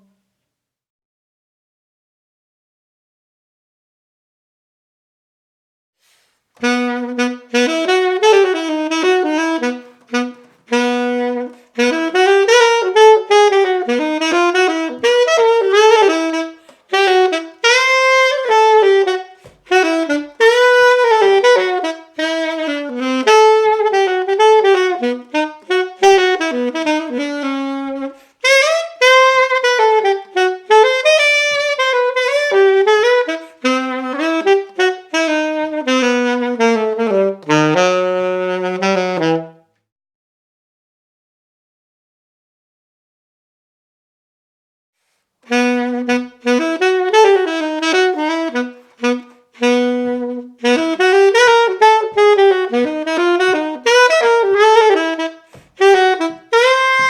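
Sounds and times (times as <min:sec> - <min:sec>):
alto saxophone solo: 0:06.1 - 0:39.9, 0:45.4 - 0:57.0.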